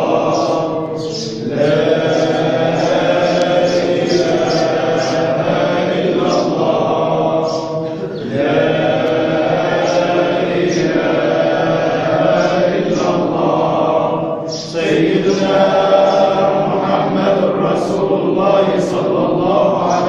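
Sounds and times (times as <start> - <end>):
many voices chanting together: 0.0 - 20.0.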